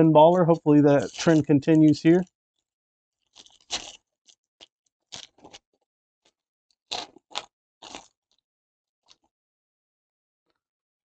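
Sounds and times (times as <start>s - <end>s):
foil wrapper crinkling: 1.0s - 1.5s.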